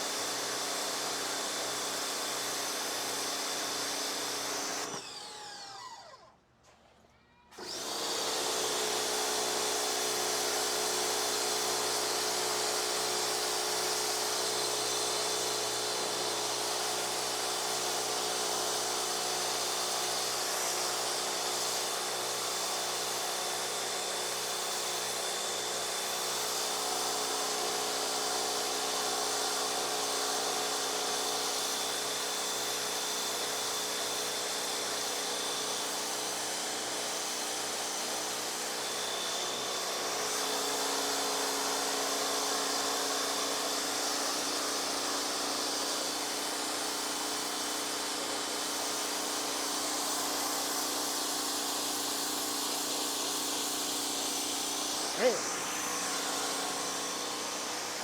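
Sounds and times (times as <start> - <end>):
pressure washer spraying: 50.0 - 58.0.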